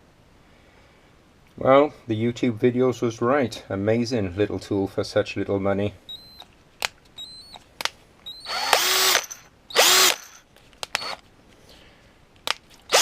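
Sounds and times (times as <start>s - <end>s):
cordless drill whining: 6.1s - 6.4s, 7.2s - 7.6s, 8.2s - 11.2s.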